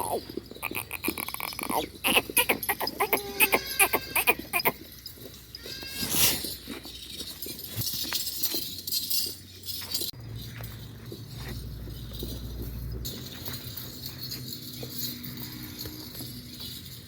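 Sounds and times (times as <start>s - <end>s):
goat bleating: 0.0s - 4.9s, 5.5s - 6.4s
shuffling: 0.0s - 17.0s.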